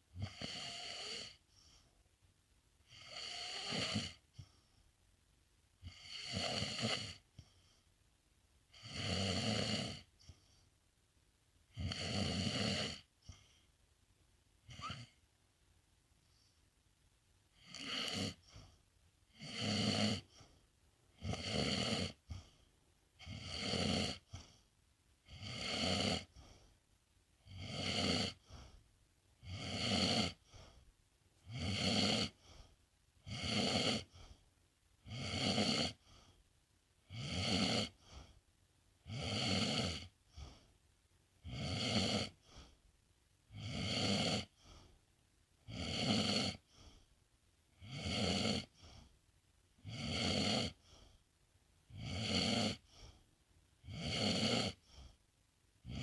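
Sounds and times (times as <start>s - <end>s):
pet snoring: 0.1s - 1.8s, 2.8s - 4.6s, 5.8s - 7.8s, 8.7s - 10.6s, 11.7s - 13.6s, 14.6s - 15.2s, 17.5s - 24.6s, 25.2s - 26.7s, 27.4s - 28.8s, 29.4s - 30.8s, 31.4s - 34.4s, 35.0s - 36.4s, 37.0s - 38.4s, 39.0s - 40.7s, 41.4s - 42.8s, 43.5s - 44.9s, 45.6s - 47.0s, 47.7s - 49.1s, 49.8s - 51.2s, 51.9s - 53.2s, 53.8s - 55.2s.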